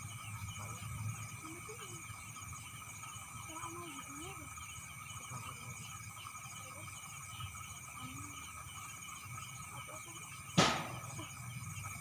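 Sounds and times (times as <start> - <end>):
insects trilling: 0.0 - 12.0
sharp knock: 10.6 - 11.2.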